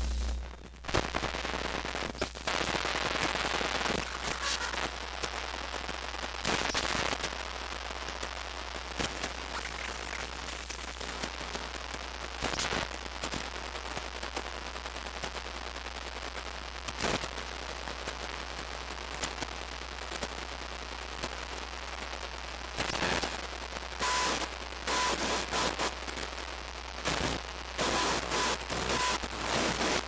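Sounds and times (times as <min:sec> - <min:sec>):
steady low hum: 0:00.0 - 0:00.7
crackling static hiss: 0:00.0 - 0:30.0.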